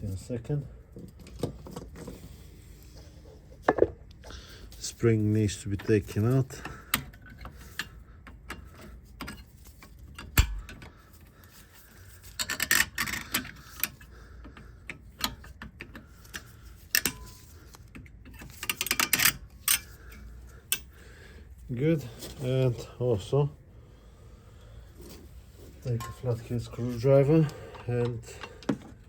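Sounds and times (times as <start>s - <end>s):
metallic clicks and scrapes: 5.7s - 21.0s.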